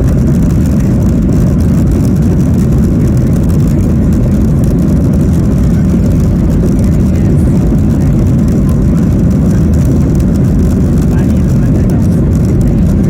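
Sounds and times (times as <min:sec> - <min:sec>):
airplane cabin engine rumble: 0:00.0 - 0:13.0.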